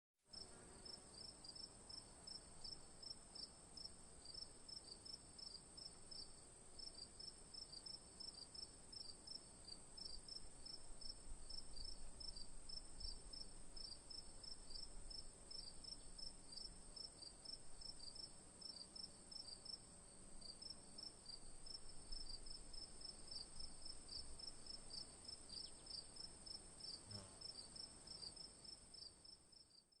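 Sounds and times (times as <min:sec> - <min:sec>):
crickets chirping: 0:00.8 - 0:29.9.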